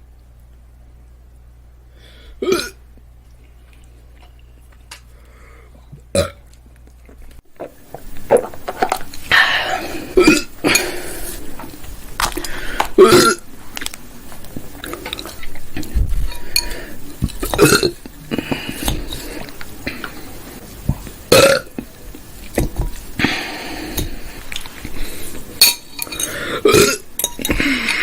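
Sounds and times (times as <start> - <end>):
woman burping: 2.4 - 2.8, 6.1 - 6.4, 9.3 - 10.9, 13.0 - 13.4, 17.5 - 18.5, 21.3 - 21.7, 26.2 - 28.0.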